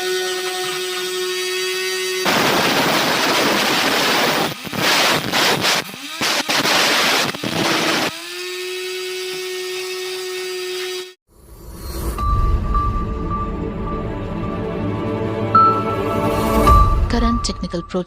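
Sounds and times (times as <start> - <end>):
motor spinning with whine: 0.0 - 10.9
angle grinder cutting: 0.0 - 11.8.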